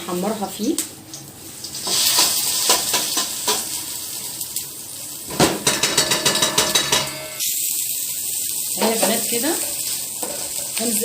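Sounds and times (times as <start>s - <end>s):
garlic sizzling in a pan: 0.0s - 11.0s
spoon clinking and scraping pan: 5.6s - 7.4s.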